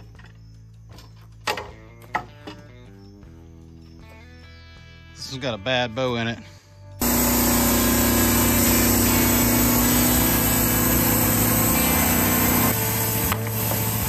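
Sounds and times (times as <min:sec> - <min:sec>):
bandsaw sawing log: 0:07.0 - 0:14.0.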